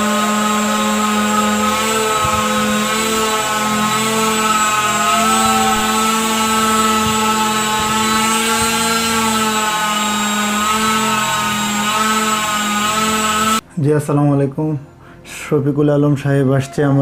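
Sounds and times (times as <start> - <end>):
small electric motor humming: 0.0 - 13.6.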